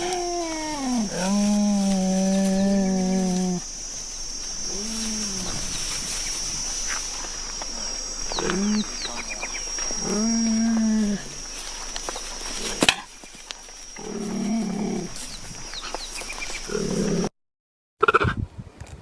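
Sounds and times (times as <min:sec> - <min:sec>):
big cat drawn-out calls: 0:00.0 - 0:03.7, 0:07.8 - 0:11.4.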